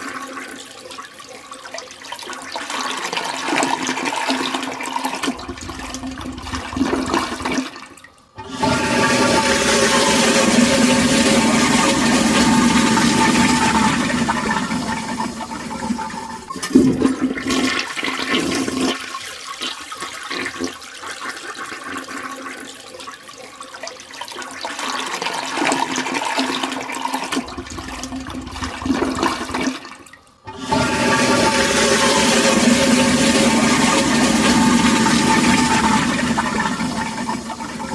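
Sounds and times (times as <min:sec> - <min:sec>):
water trickling: 0:00.0 - 0:17.7, 0:27.2 - 0:37.9
toilet flushing: 0:00.0 - 0:37.9.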